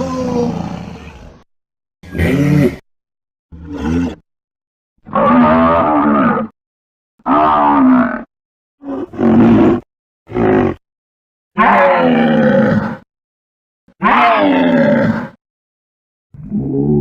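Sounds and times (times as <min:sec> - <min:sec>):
deep creature calls: 0:03.5 - 0:04.2, 0:05.0 - 0:06.6, 0:07.2 - 0:10.8, 0:11.6 - 0:13.0, 0:14.0 - 0:15.4.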